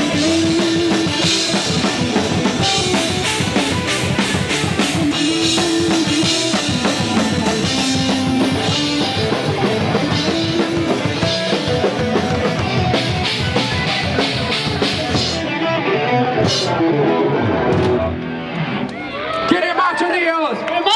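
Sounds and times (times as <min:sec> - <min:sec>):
drum kit hits: 0:00.0 - 0:15.4
heavy metal band playing live: 0:00.0 - 0:18.8.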